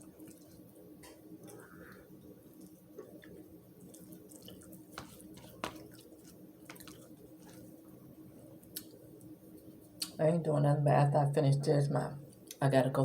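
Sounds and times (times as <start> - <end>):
low steady hum: 0.0 - 13.0
chewing and utensil clicks: 0.1 - 7.6.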